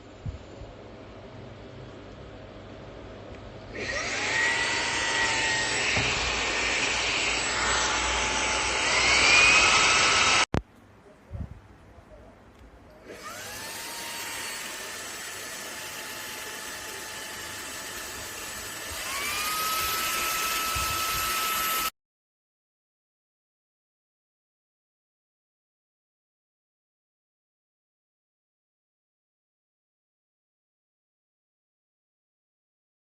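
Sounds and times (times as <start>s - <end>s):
handheld vacuum cleaner whine: 3.7s - 10.6s, 13.0s - 21.9s.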